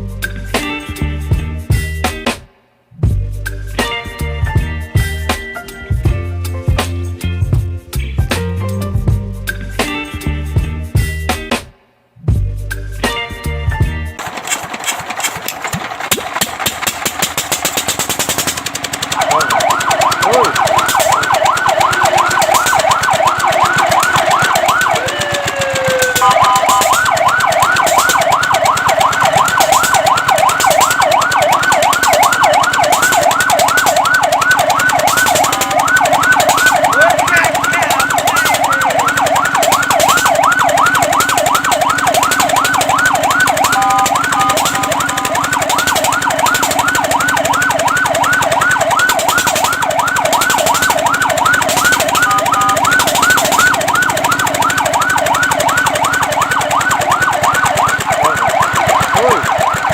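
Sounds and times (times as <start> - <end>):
fire truck siren yelp: 14.2 - 59.9
steady siren tone: 19.0 - 59.9.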